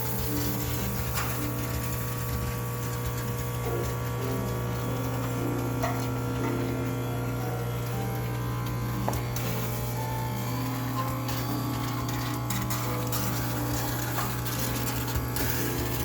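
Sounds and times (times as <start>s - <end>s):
steam cleaner hissing and humming: 0.0s - 16.0s
soft background music: 3.6s - 16.0s.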